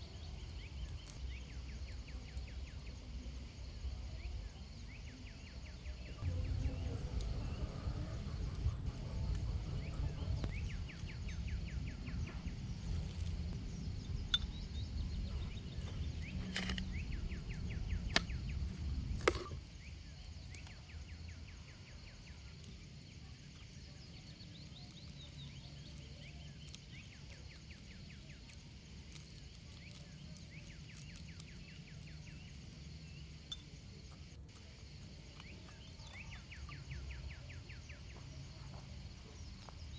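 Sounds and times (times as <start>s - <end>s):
insect chorus chirping: 0.0s - 39.9s
low rumble: 6.2s - 19.7s.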